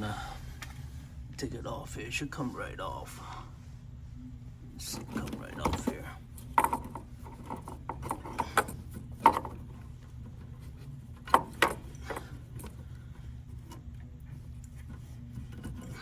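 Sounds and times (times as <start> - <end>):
steady low hum: 0.0 - 16.0
metal parts clicking and knocking: 4.9 - 9.7.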